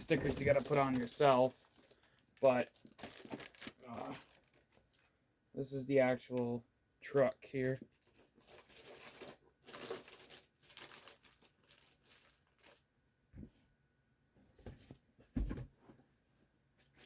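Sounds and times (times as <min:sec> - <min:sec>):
packaging rustling and crinkling: 0:00.0 - 0:05.1, 0:07.9 - 0:12.8.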